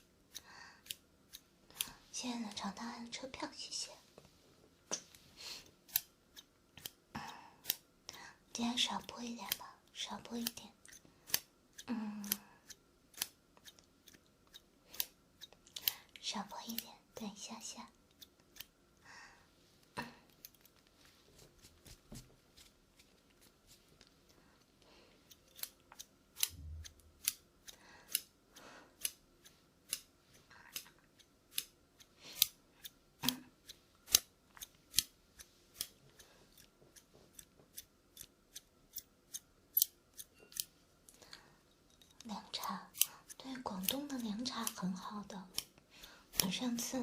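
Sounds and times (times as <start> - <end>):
scissors snipping: 5.8 - 7.8, 8.8 - 16.9, 18.1 - 18.7, 25.3 - 28.3, 29.0 - 29.2, 29.8 - 30.1, 30.7 - 40.7, 42.1 - 47.0.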